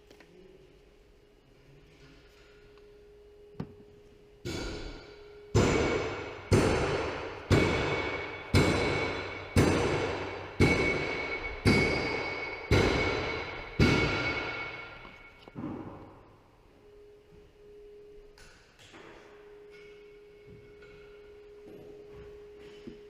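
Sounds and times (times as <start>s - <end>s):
faint steady hum: 0.0s - 23.0s
background music with steady beat: 2.3s - 23.0s
ringing percussive pitched hits: 4.4s - 16.4s.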